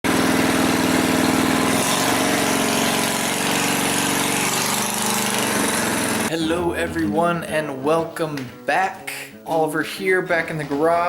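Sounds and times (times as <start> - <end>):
small engine running: 0.1 - 6.3.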